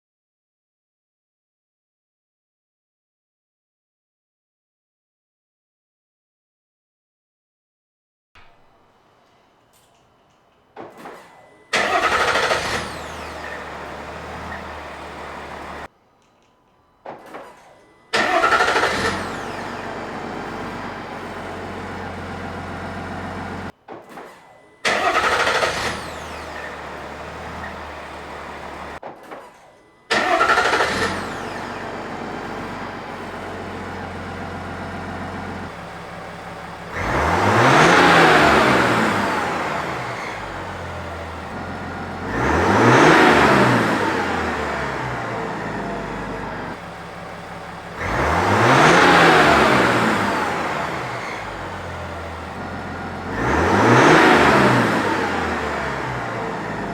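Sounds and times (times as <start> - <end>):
diesel engine starting and idling: 8.4 - 15.9, 17.1 - 29.0, 29.6 - 56.9
engine revving: 11.0 - 15.9, 17.9 - 23.8, 24.8 - 29.0, 30.1 - 56.9.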